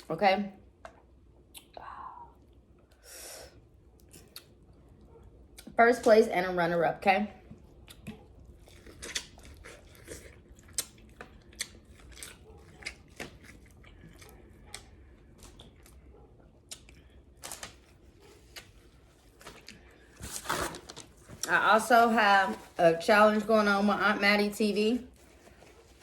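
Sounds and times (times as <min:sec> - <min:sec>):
chewing: 0:03.9 - 0:05.6, 0:07.5 - 0:20.2.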